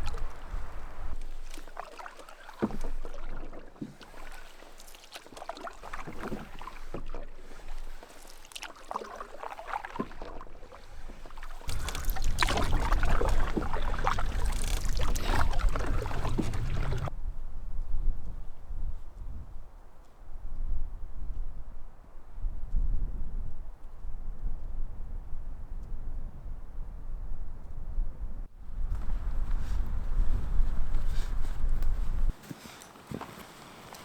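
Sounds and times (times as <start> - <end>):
canoe paddle strokes: 0.0 - 17.1, 28.8 - 34.0
water splashing and dripping: 0.0 - 17.1.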